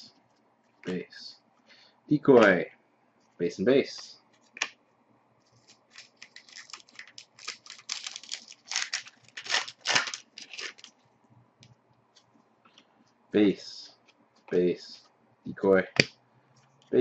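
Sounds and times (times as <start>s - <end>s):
wrapper tearing and crinkling: 5.6s - 11.0s.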